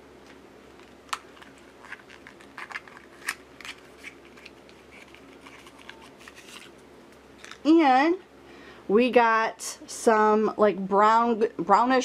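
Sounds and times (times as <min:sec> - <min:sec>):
plastic packaging crinkling: 0:00.7 - 0:06.8.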